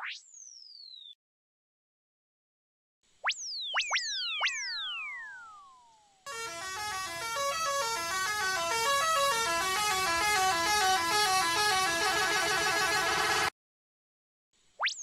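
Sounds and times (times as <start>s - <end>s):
layered train horn sound effect: 6.3s - 13.5s.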